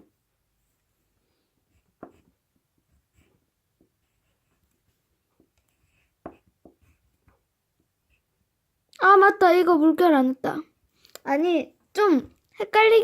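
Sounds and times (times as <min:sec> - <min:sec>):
crayon scratching on paper: 0:01.7 - 0:07.4.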